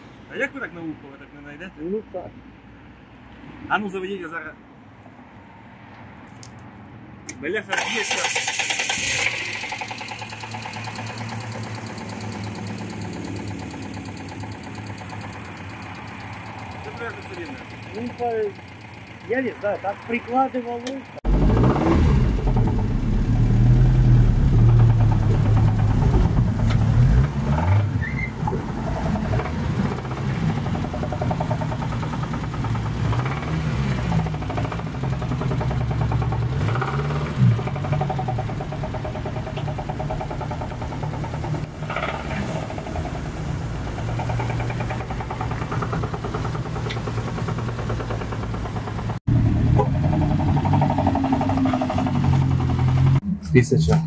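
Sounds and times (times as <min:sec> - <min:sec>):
car engine idling with knock: 0:09.3 - 0:27.6, 0:28.4 - 0:53.2.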